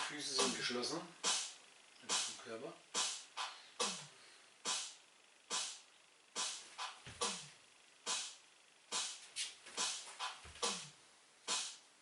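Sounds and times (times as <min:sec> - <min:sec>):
short hissing beat hits: 0:01.2 - 0:02.3, 0:03.0 - 0:05.8, 0:08.1 - 0:10.9, 0:11.5 - 0:11.8.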